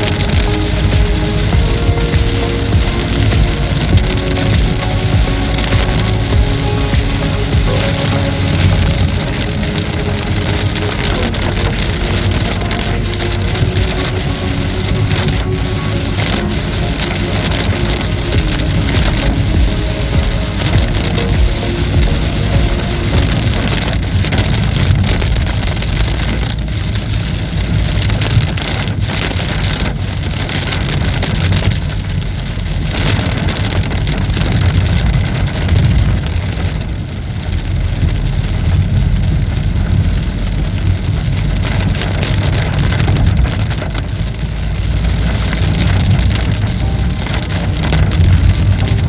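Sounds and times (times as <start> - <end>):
heavy rain on a car: 0.0 - 49.0
road and engine rumble: 0.0 - 49.0.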